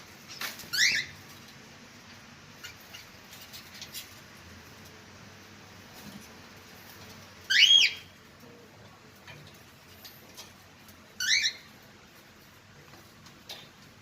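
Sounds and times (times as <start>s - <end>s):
budgerigar chirping: 7.5s - 8.0s.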